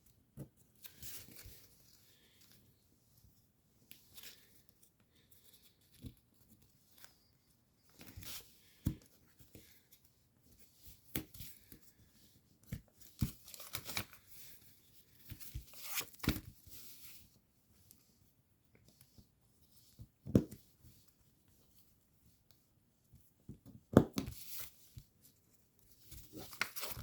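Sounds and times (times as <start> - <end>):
paper rustling and crinkling: 0.5 - 2.7, 3.9 - 17.3, 24.3 - 27.0.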